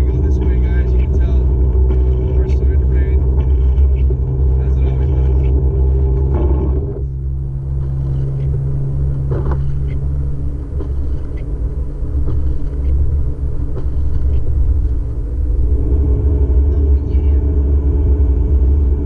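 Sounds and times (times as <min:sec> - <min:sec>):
low engine hum: 0:00.0 - 0:19.0
road rumble inside car: 0:00.0 - 0:19.0.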